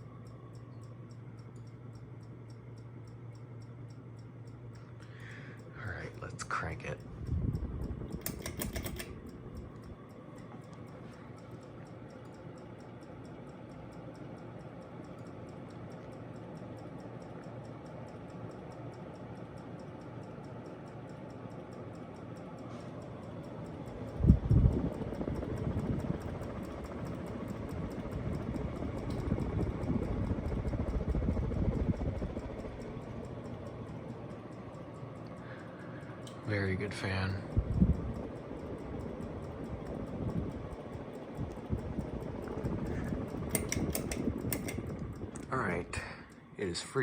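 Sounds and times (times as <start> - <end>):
ceiling fan whirring: 0.0 - 47.0
fan switch clicks: 0.0 - 47.0
fan ticking: 0.0 - 47.0
air rumbling on microphone: 7.1 - 8.2.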